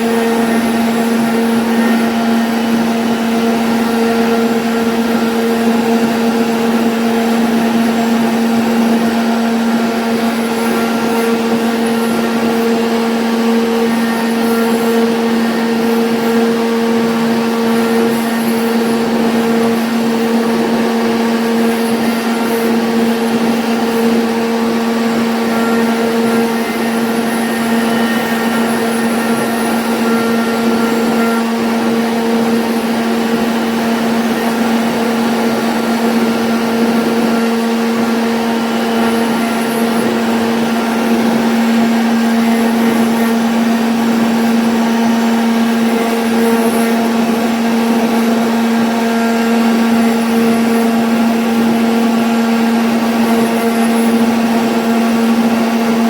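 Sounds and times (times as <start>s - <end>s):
router cutting noise: 0.0s - 56.0s
router spindle whine: 0.0s - 56.0s.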